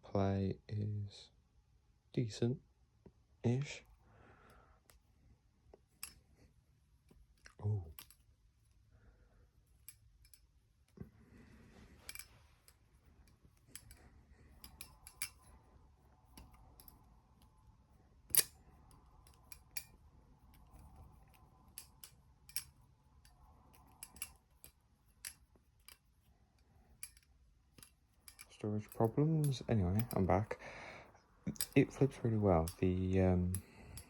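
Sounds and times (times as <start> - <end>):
butterfly knife handles clacking: 5.8 - 6.3, 7.1 - 8.3, 9.8 - 10.5, 12.0 - 17.6, 18.2 - 30.6, 31.5 - 34.0.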